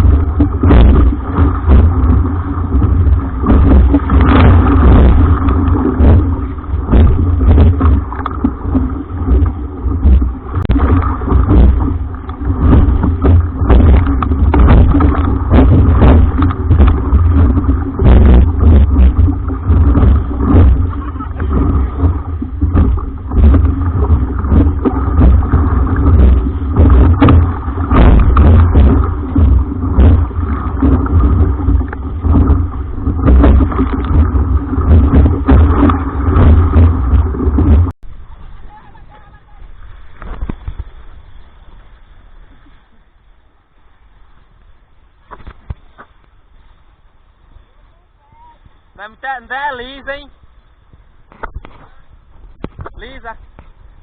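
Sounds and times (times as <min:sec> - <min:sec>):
wind buffeting microphone: 0:00.0 - 0:41.6
sailing raft rumble: 0:00.0 - 0:54.0.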